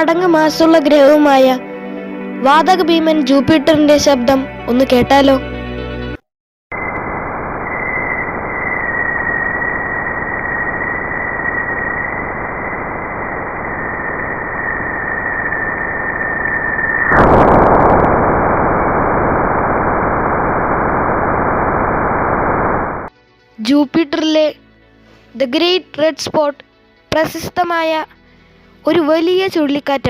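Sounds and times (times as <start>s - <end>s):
dense static: 6.7s - 23.1s
thin steady high tone: 6.8s - 19.1s.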